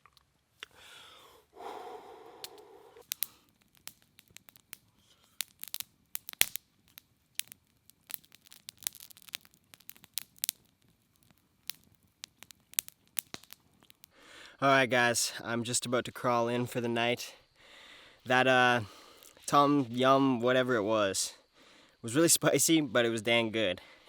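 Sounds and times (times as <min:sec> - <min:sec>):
soft breathy sound: 0:00.6 - 0:03.6, 0:14.1 - 0:14.6, 0:17.3 - 0:19.4
sharp crackling clicks: 0:02.4 - 0:14.5.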